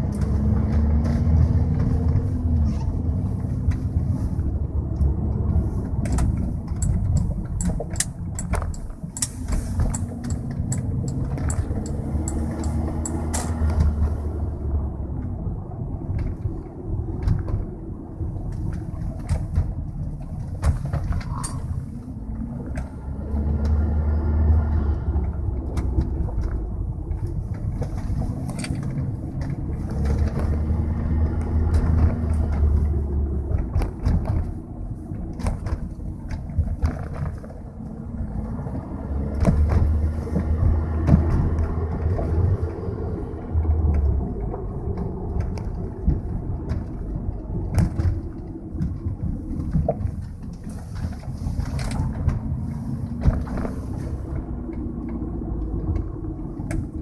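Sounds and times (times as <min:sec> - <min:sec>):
car engine running: 0:00.0 - 0:17.1.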